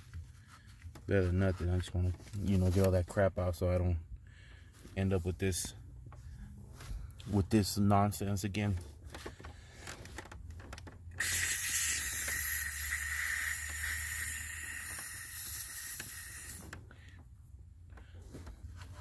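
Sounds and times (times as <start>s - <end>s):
blowing through a straw hiss: 11.2s - 16.7s.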